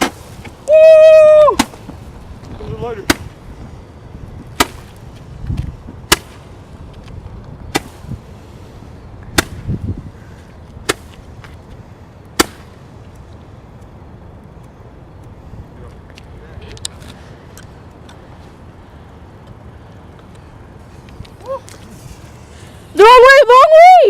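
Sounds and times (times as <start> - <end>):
firework sharp cracks: 0.0 - 0.7, 1.4 - 2.0, 3.0 - 3.4, 4.5 - 5.0, 6.0 - 6.6, 7.7 - 8.2, 9.3 - 9.7, 10.8 - 11.3, 12.3 - 12.8.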